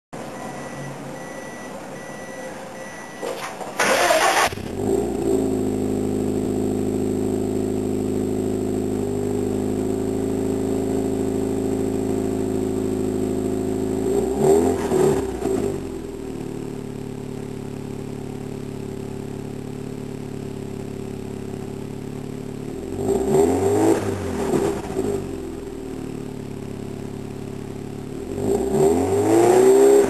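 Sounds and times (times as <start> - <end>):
faint beeps: 0.2 - 3.4
car engine starting and idling: 0.2 - 30.0.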